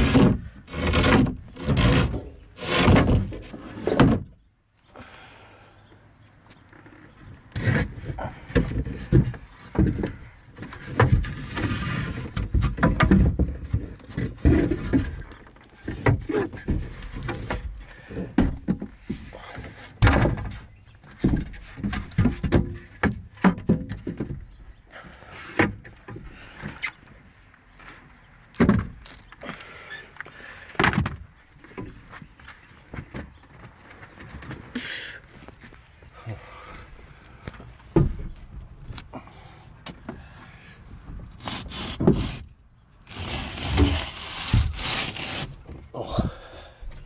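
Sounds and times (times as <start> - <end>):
wood knocks bangs and creaks: 0.0 - 4.4, 7.6 - 24.8, 25.6 - 27.0, 28.5 - 29.5, 30.7 - 32.2, 37.5 - 39.2.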